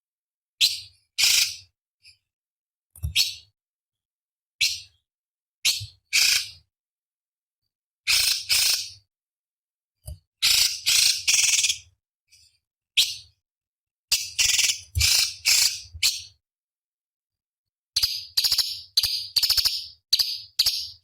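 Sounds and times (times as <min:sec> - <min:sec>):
bird calling in harsh bursts: 0:14.1 - 0:16.3.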